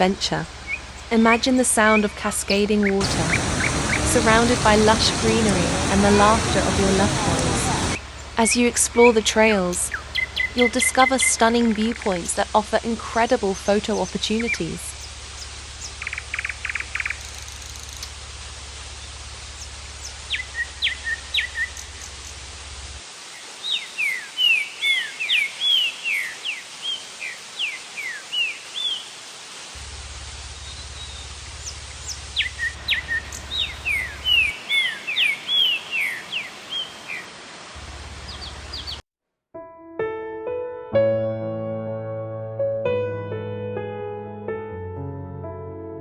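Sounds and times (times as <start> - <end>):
waterfall rushing: 3.0 - 9.8, 12.0 - 39.0
songbird whistling: 9.9 - 11.4, 20.0 - 22.1, 30.6 - 36.9.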